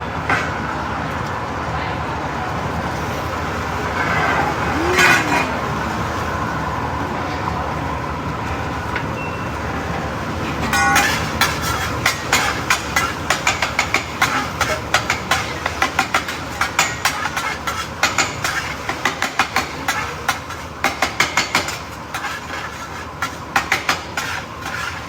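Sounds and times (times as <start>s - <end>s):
restaurant noise: 0.0s - 25.0s
spatula clacking on metal griddle: 10.6s - 25.0s.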